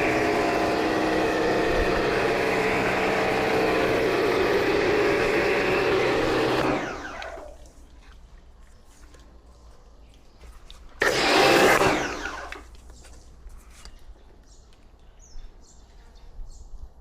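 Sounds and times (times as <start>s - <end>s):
pressure washer motor humming: 0.0s - 7.7s, 11.0s - 12.7s.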